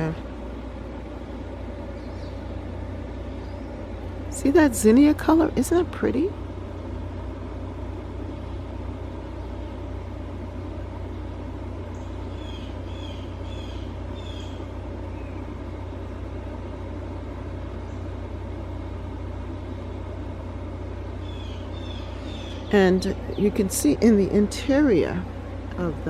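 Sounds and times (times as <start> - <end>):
low outdoor rumble: 0.0 - 26.0
small bird chirping: 1.9 - 2.6, 3.2 - 3.8, 11.9 - 15.5, 21.2 - 23.7.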